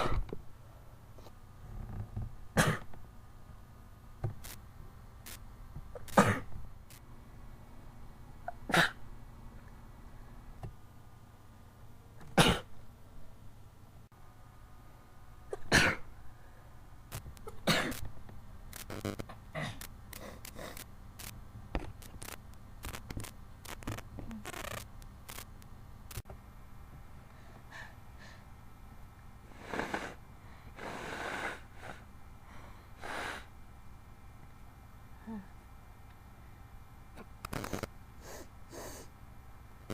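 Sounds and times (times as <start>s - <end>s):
person sneezing: 2.6s - 2.9s, 8.5s - 9.0s
noisy blasts of breath: 29.5s - 33.6s, 38.2s - 39.1s.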